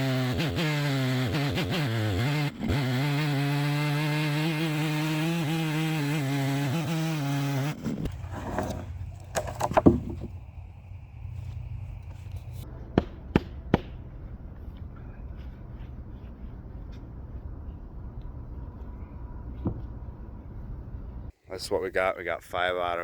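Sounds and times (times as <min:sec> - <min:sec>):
chainsaw cutting through log: 0:00.0 - 0:10.4
sharp knocks and clatters: 0:08.4 - 0:10.4.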